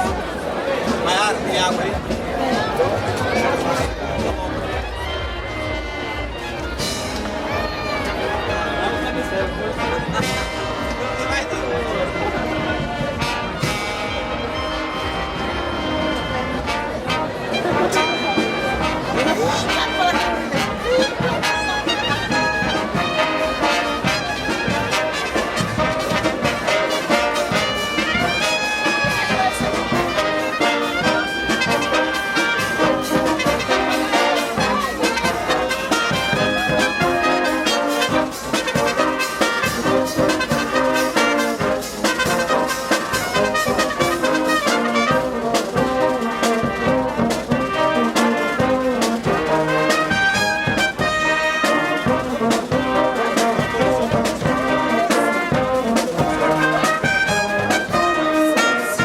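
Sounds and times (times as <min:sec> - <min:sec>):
percussion hits: 0:00.0 - 0:15.4
brass band playing: 0:00.0 - 0:59.0.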